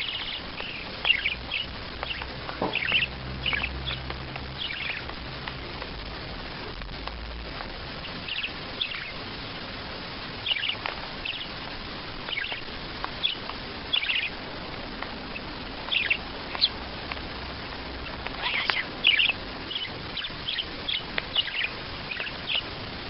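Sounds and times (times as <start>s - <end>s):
small bird chirping: 0.0s - 5.8s, 8.0s - 9.6s, 10.3s - 14.5s, 15.2s - 16.8s, 18.0s - 22.8s
background hiss: 0.0s - 23.0s.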